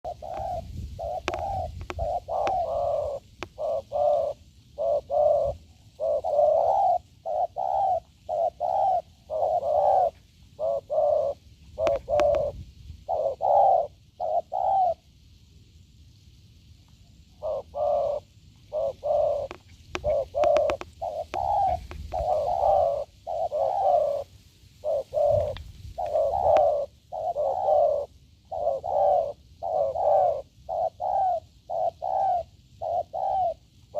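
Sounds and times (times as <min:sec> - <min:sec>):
dove cooing: 0:00.0 - 0:15.1, 0:17.3 - 0:33.9.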